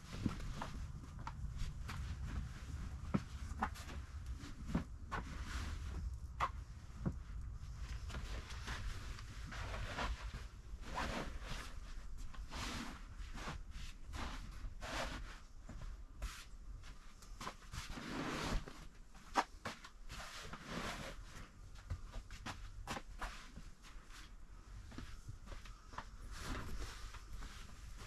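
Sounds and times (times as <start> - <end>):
low steady rumble: 0.0 - 19.2
soft rustles and swishes: 0.0 - 28.0.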